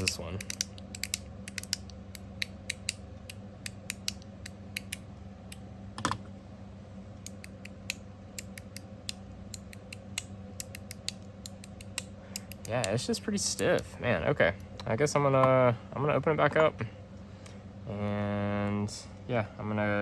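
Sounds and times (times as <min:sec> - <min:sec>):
metal fidget slider clicking: 0:00.0 - 0:01.9.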